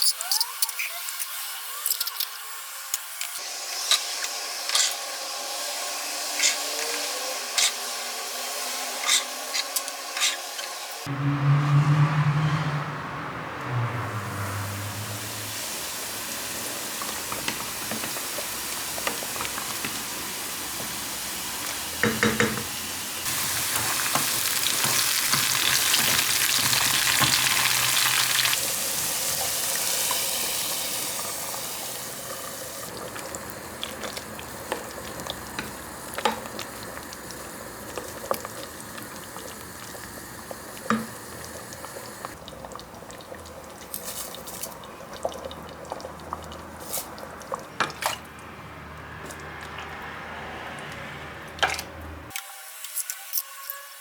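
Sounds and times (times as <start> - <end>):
food sizzling in a pan: 0.2 - 11.1, 14.8 - 42.4, 52.3 - 54.0.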